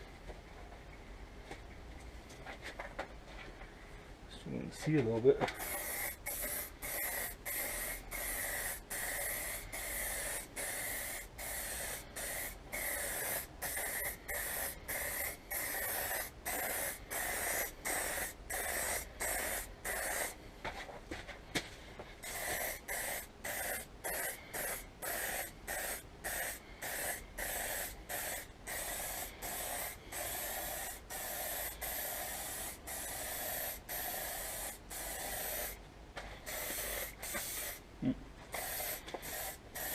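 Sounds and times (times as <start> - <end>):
aerosol spray can hissing: 5.6 - 20.4, 22.2 - 35.8, 36.4 - 37.8, 38.5 - 39.9.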